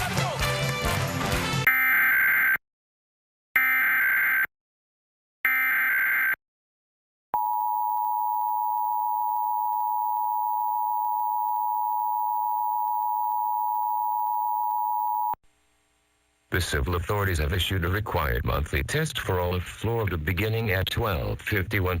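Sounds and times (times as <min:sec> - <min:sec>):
two-tone attention signal: 0:07.4 - 0:15.4.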